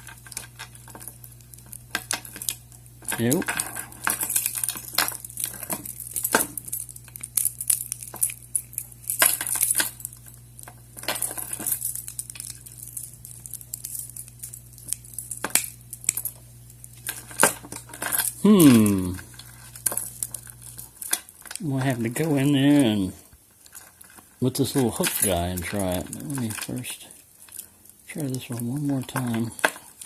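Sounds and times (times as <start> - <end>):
metal keys clinking: 2.0 - 10.4, 11.0 - 16.4
key rattling in padlock: 2.1 - 10.3
short falling vocal sound: 18.4 - 19.3.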